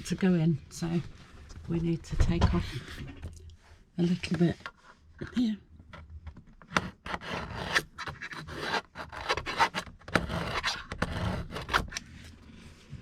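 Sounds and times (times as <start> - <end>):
hand tool scraping wood: 6.7 - 12.0.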